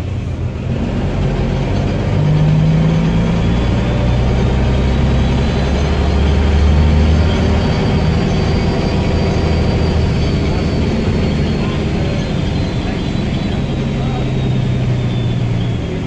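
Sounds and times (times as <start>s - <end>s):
bus engine under load: 0.0s - 16.0s
faint high whistle: 3.5s - 16.0s.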